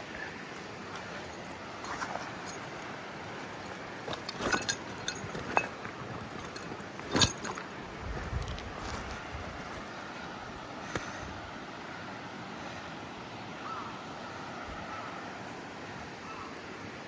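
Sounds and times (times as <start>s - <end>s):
mountain stream rushing: 0.0s - 17.0s
gear clinking and knocking: 3.5s - 7.7s.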